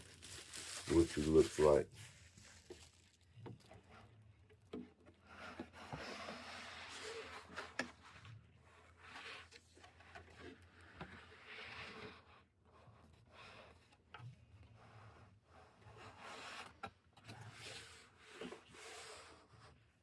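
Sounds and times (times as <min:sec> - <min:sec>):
plastic wrapping rustling: 0:00.0 - 0:04.2.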